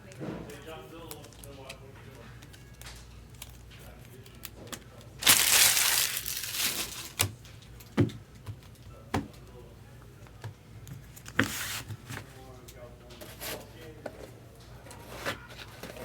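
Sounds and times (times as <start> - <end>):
cards clicking: 4.2 - 7.3
packaging crinkling: 5.2 - 7.3.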